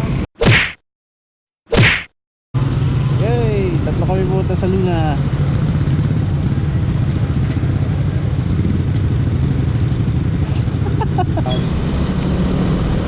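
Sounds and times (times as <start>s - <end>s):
road and wind noise: 2.6s - 13.0s.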